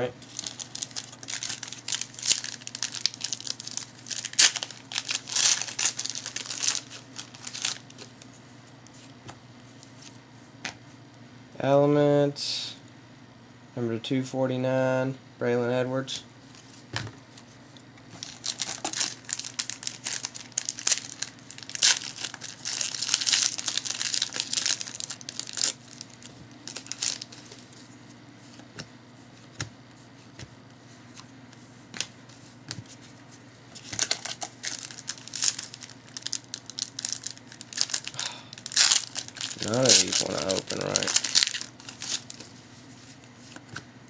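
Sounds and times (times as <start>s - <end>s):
card pack wrappers tearing: 0.2s - 8.2s, 18.2s - 27.6s, 33.8s - 42.5s.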